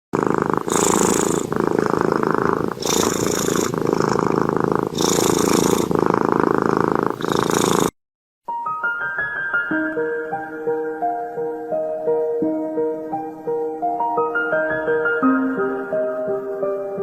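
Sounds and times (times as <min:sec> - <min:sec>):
cat snoring: 0:00.1 - 0:08.0
piano music: 0:08.4 - 0:17.0.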